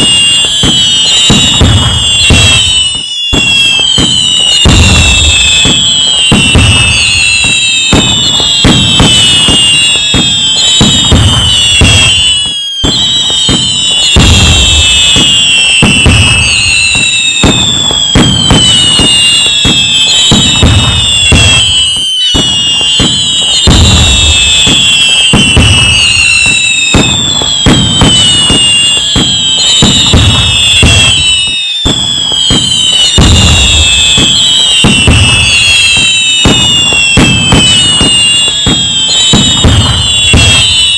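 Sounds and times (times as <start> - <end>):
fireworks crackling and booming: 0.0 - 40.9
whistling fireworks falling in pitch: 0.0 - 40.9.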